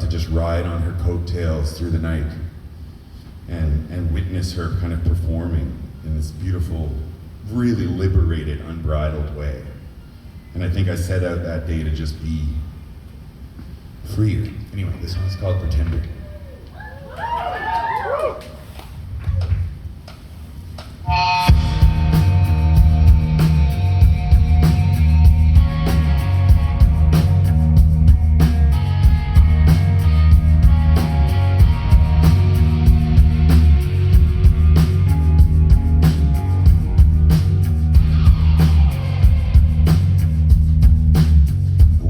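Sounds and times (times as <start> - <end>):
electric guitar: 21.0 - 40.5
drum kit steady beat: 21.1 - 42.0
heavy bass: 21.1 - 42.0.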